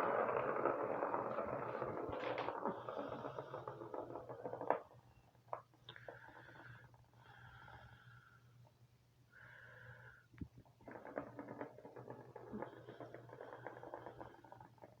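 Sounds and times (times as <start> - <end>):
small clattering: 0.0 - 7.0, 10.5 - 15.0.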